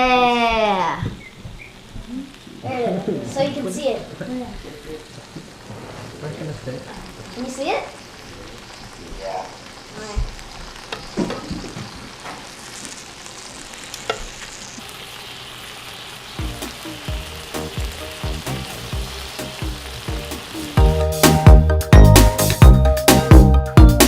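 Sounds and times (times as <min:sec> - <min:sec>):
meat sizzling on a grill: 0:00.0 - 0:24.0
background music with beat: 0:16.4 - 0:24.0.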